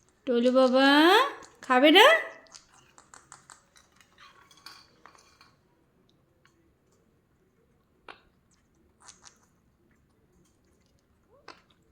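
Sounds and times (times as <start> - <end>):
birds pecking at a dish: 2.4 - 5.6, 7.8 - 11.9.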